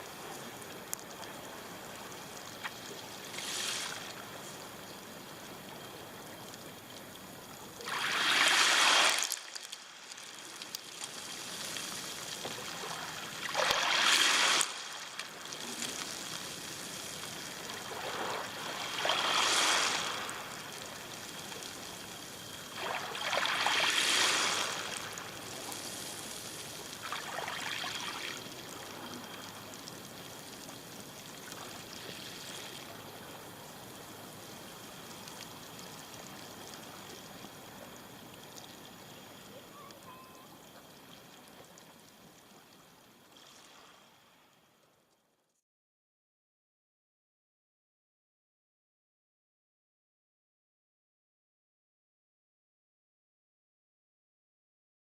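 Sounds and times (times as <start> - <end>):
waves washing on pebble beach: 7.8 - 21.0, 22.8 - 26.4.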